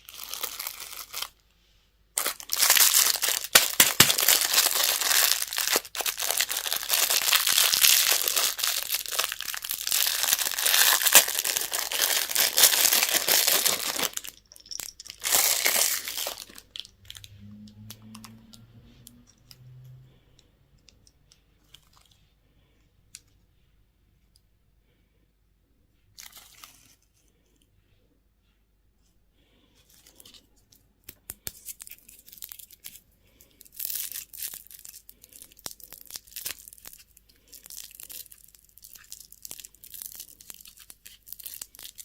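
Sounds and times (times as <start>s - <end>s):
candy wrapper crinkling and tearing: 0.0s - 1.4s, 2.2s - 17.3s, 31.1s - 42.0s.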